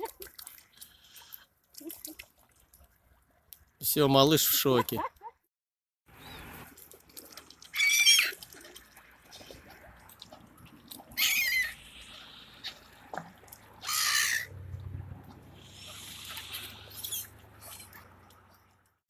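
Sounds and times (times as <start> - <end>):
waterbirds calling shrilly: 6.1 - 9.7, 10.9 - 14.7, 15.3 - 18.7.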